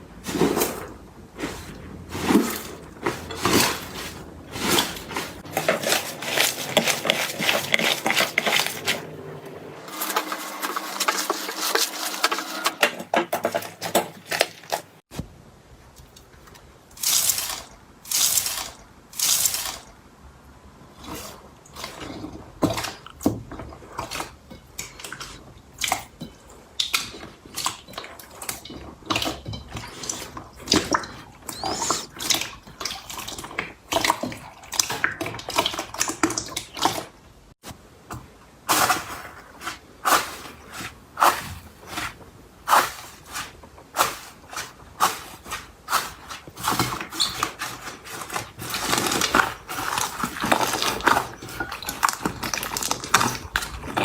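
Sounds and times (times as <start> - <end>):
slime squelching: 0.0 - 9.1, 21.0 - 37.2, 38.6 - 54.0.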